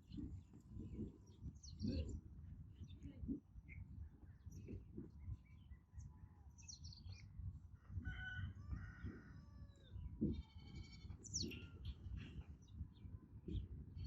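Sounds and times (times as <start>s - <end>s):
small birds chirping: 0.0s - 7.5s, 9.0s - 14.0s
rooster crowing faintly: 7.8s - 9.9s.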